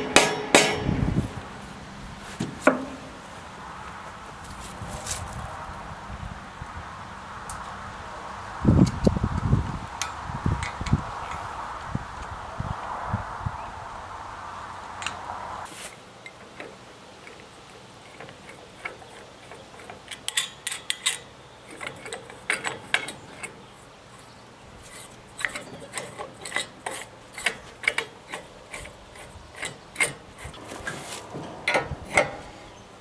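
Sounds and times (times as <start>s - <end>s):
metal hardware clicking and clinking: 16.2s - 32.6s.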